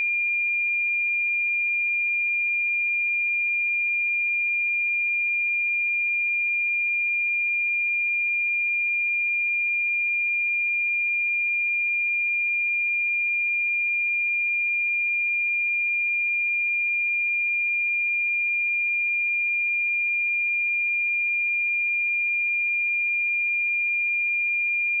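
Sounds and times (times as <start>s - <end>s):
sine wave test tone: 0.0s - 25.0s.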